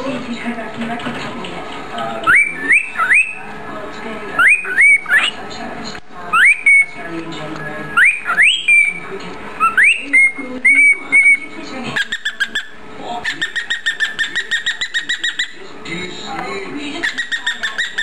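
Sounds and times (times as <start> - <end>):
cockatiel chirping: 2.3 - 3.5, 4.4 - 5.4, 8.0 - 9.0, 9.6 - 11.4, 12.0 - 15.6, 17.0 - 18.0
cockatiel whistling: 2.3 - 3.5, 4.4 - 5.4, 6.3 - 7.0, 7.9 - 9.0, 9.6 - 12.8.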